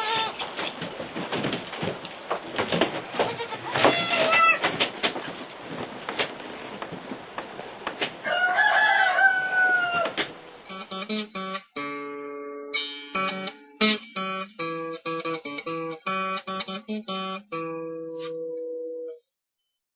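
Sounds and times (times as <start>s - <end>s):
acoustic guitar plucking: 10.5s - 19.2s.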